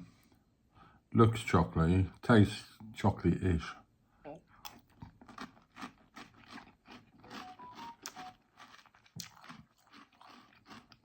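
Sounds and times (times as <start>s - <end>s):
person chewing crunchy cereal: 4.6s - 11.0s.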